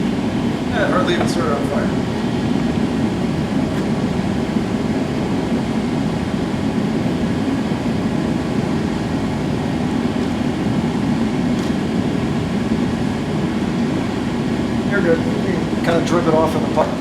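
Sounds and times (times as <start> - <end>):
gas burner rushing: 0.0 - 17.0.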